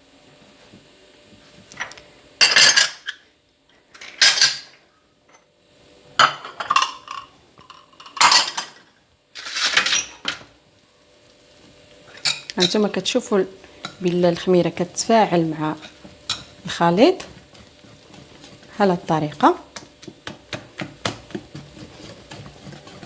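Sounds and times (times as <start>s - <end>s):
utensil scraping a bowl: 13.6s - 23.0s.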